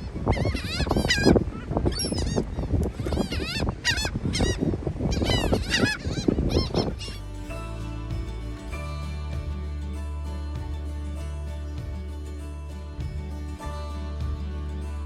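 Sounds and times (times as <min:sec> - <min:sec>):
seagulls squawking: 0:00.0 - 0:07.6
background music: 0:06.8 - 0:15.0.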